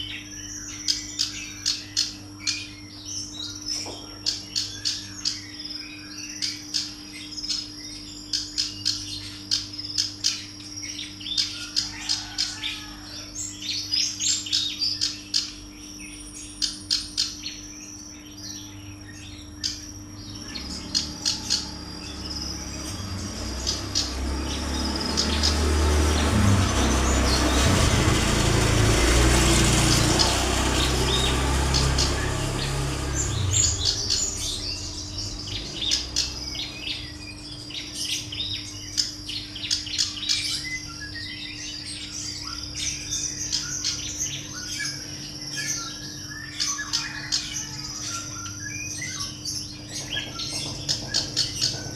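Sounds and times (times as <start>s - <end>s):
bird high chirping calls: 0.0s - 51.9s
loud low rumble: 20.1s - 38.9s.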